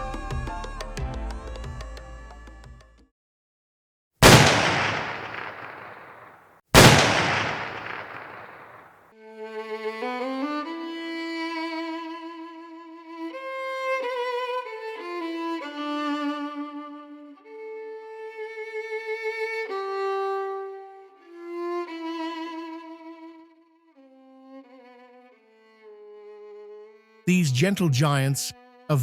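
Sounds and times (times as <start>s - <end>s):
solo violin slow melody: 9.2s - 27.2s.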